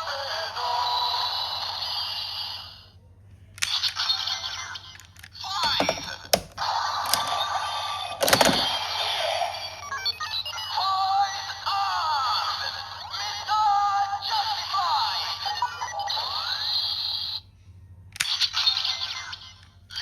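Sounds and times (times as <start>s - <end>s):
toy electronic sound effects: 3.6s - 13.4s, 18.2s - 20.0s
sharp plastic clicks: 5.6s - 7.3s.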